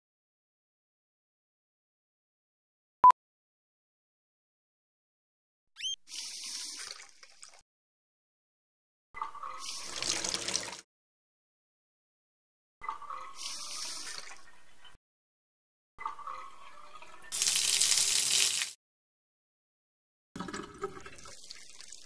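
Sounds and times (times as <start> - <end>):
tap water running into sink: 9.8 - 10.8, 17.3 - 18.8, 20.4 - 22.0.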